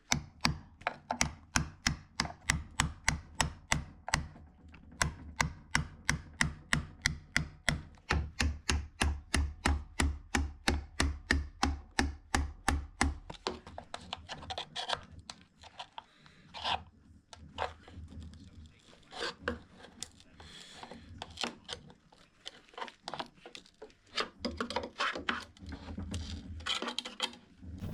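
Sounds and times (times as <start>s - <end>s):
hammer striking chisel: 0.0s - 4.4s, 5.0s - 13.6s
chisel scraping: 19.1s - 20.0s.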